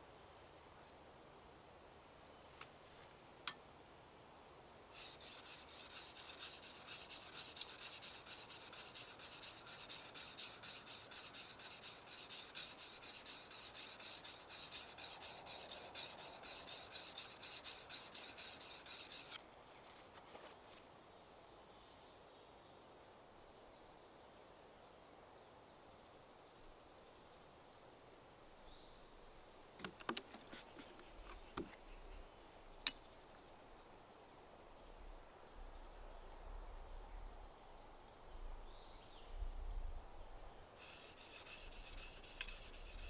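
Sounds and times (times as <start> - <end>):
hand tool rasping: 5.0 - 19.4, 40.8 - 43.0.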